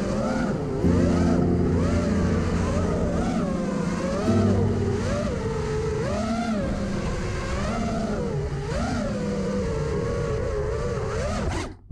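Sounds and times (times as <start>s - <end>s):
quadcopter motors whining: 2.6s - 11.8s.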